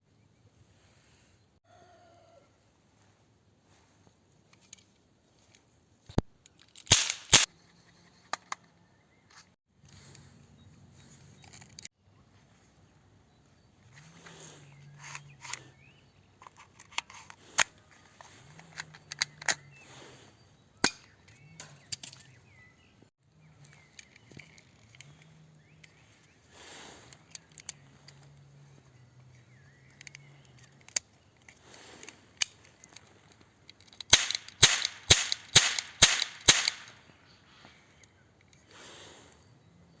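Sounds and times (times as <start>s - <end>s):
toy gun mechanism clicking: 6.6s - 7.5s, 33.7s - 37.0s
toy gun sharp shots: 6.9s - 7.5s, 34.1s - 37.0s.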